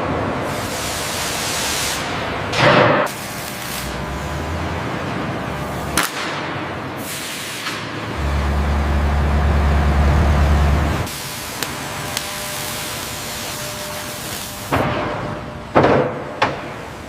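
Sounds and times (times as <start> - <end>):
steady machine hiss: 0.5 - 2.3, 7.0 - 8.0, 11.0 - 14.8
deep machine rumble: 8.1 - 11.1.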